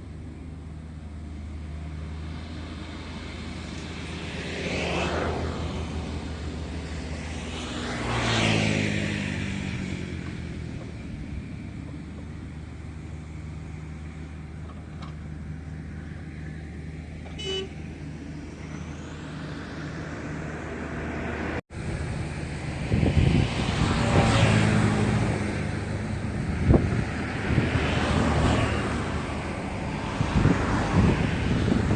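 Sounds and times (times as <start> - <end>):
short horn-like beep: 17.3 - 17.8.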